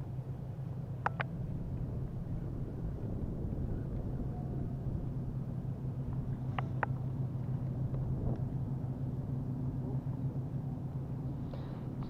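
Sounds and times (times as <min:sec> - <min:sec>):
low rumbling drone: 0:00.0 - 0:12.0.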